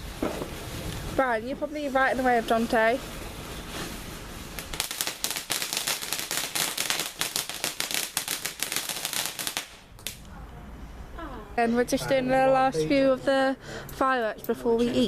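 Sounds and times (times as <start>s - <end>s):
firework fountain crackling: 0.0s - 10.3s.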